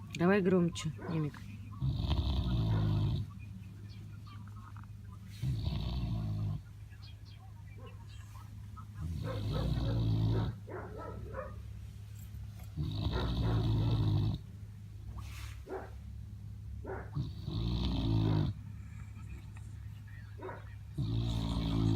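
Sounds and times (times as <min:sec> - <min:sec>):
dog snoring: 0:01.8 - 0:03.3, 0:05.4 - 0:06.7, 0:09.0 - 0:10.7, 0:12.7 - 0:14.5, 0:16.9 - 0:18.6, 0:20.4 - 0:21.9
dog breathing: 0:20.4 - 0:21.9.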